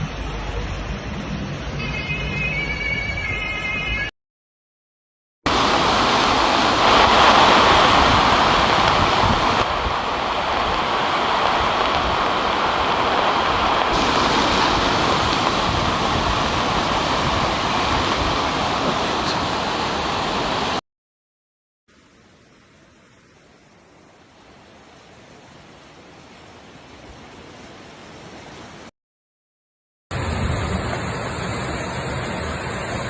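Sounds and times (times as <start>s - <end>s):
floodwater rushing: 5.5s - 20.8s, 21.9s - 28.9s, 30.1s - 33.0s.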